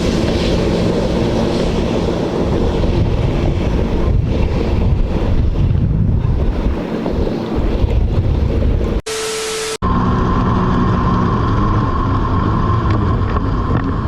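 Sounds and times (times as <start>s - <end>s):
wind buffeting microphone: 0.0s - 9.0s
jet ski engine: 0.0s - 14.0s
water rushing: 0.0s - 14.0s.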